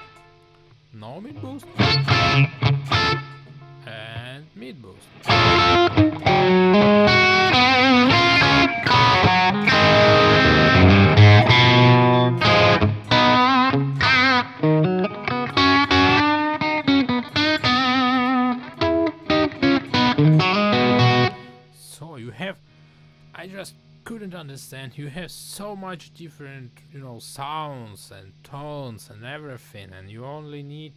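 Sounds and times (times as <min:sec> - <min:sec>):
overdriven electric guitar lead: 0:00.0 - 0:04.2, 0:05.1 - 0:21.6.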